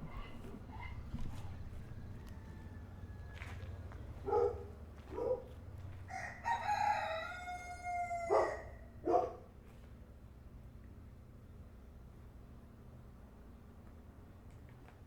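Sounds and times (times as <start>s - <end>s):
rooster crowing: 0.7s - 3.8s, 6.1s - 8.9s.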